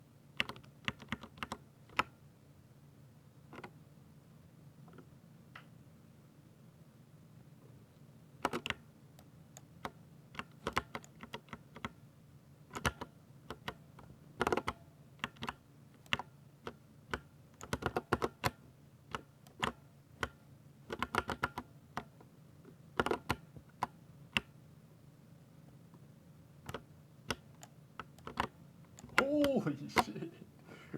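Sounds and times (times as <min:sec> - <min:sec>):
mechanical keyboard typing: 0:00.4 - 0:02.1, 0:03.6 - 0:03.8, 0:08.4 - 0:08.8, 0:09.6 - 0:12.0, 0:12.7 - 0:13.8, 0:14.4 - 0:21.7, 0:23.0 - 0:24.5, 0:26.7 - 0:30.1.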